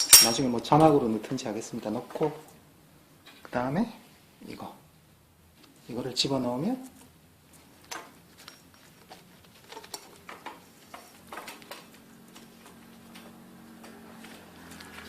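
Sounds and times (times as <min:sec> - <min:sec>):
bicycle parts clicking and tapping: 0:00.0 - 0:00.9, 0:07.8 - 0:15.0.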